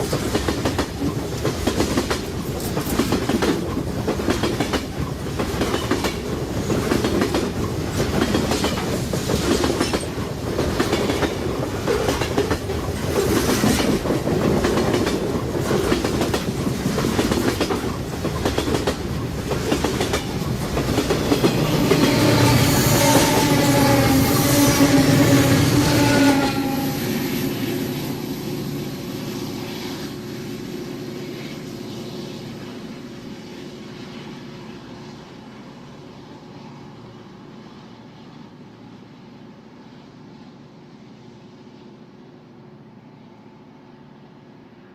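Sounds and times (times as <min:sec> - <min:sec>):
train wheels clicking on rails: 0:00.0 - 0:35.6
freight train passing: 0:00.0 - 0:44.9
train horn: 0:21.5 - 0:28.2.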